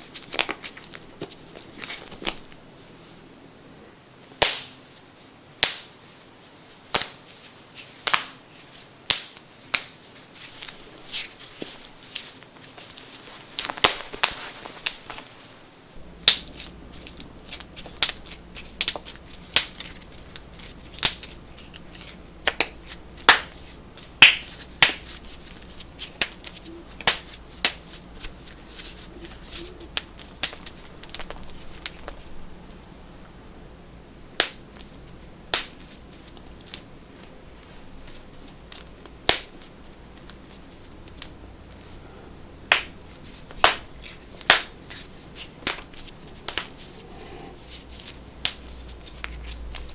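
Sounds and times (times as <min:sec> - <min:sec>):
knuckles cracking: 0:43.5 - 0:49.9.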